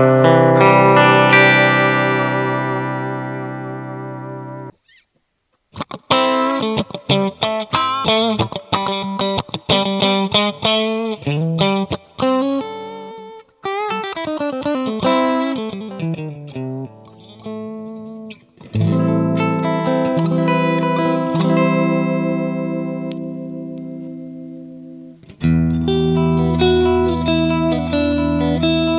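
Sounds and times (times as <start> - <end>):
electric guitar chord ringing: 0.0 - 4.8, 6.1 - 28.9
electric guitar single-note phrases: 0.0 - 4.8, 6.1 - 28.9.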